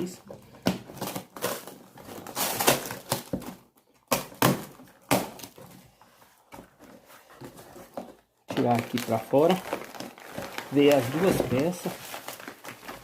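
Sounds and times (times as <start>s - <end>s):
cardboard rustling and scraping: 4.7s - 13.0s.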